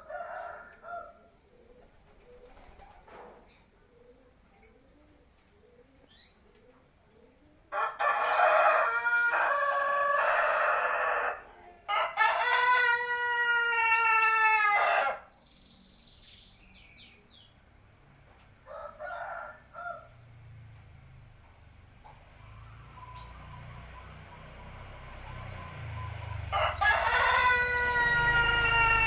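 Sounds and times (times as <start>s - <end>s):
rooster crowing: 0.0s - 1.3s, 7.7s - 15.2s, 18.6s - 20.2s, 26.5s - 29.0s.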